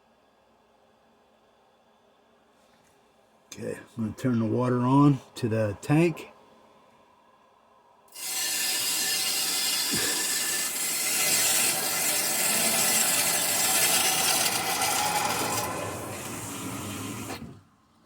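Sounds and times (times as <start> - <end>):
water rushing through valve: 8.2 - 17.6.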